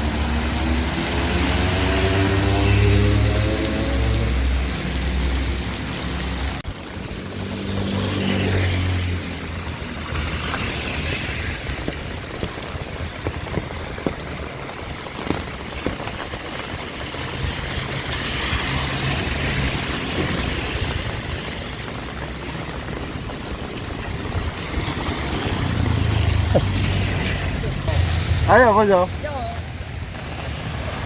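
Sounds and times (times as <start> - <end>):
heavy rain: 0.0 - 31.0
sharp drips spattering: 0.0 - 31.0
vehicle engine humming: 8.5 - 31.0.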